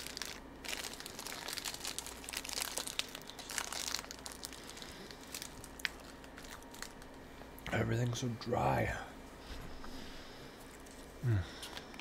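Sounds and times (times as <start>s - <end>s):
crunching cookies: 0.0s - 7.2s
plastic packaging crinkling: 0.0s - 7.2s.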